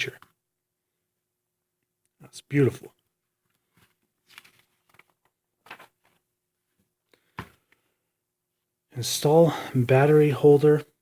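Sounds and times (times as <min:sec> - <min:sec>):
soft rustles of small parts: 0:03.0 - 0:08.0.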